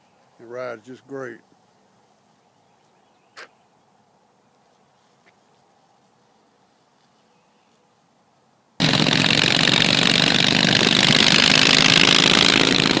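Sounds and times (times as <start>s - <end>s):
motorcycle engine running: 8.8s - 13.0s.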